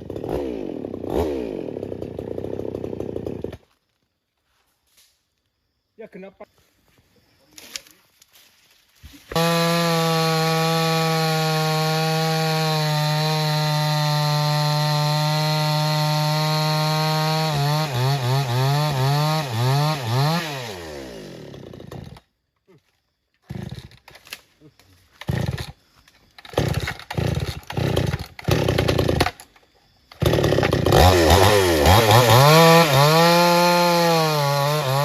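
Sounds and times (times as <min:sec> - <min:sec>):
chainsaw engine running: 0:00.0 - 0:03.6, 0:09.3 - 0:22.2, 0:25.2 - 0:25.8, 0:26.5 - 0:29.4, 0:30.2 - 0:35.0.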